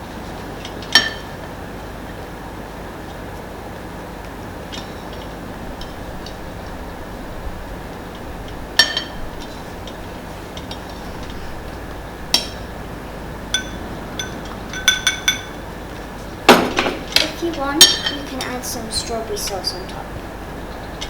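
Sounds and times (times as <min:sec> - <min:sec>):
steady background hiss: 0:00.0 - 0:21.0
spoon clinking against glass: 0:13.6 - 0:15.6.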